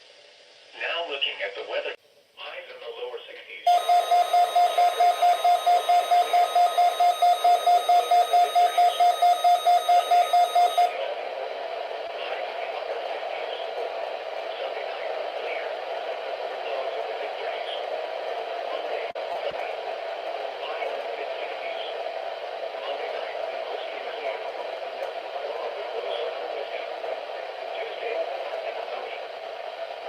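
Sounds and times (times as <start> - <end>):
faint radio broadcast: 0.8 - 30.0
radio static: 3.7 - 10.9
weather radio alert beeping: 3.7 - 10.9.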